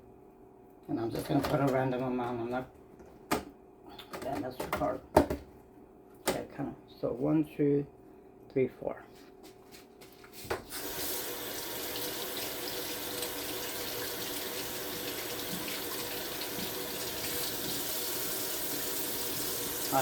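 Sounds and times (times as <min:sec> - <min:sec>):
tap running into sink: 0:13.2 - 0:19.9.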